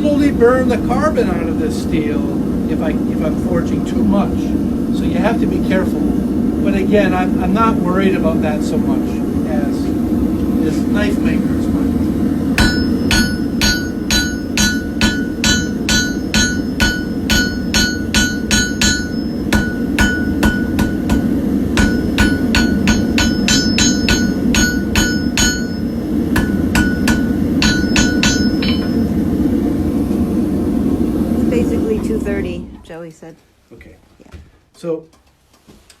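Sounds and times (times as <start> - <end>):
gas forge running: 0.0 - 33.2
hammer ringing on anvil: 12.6 - 29.2.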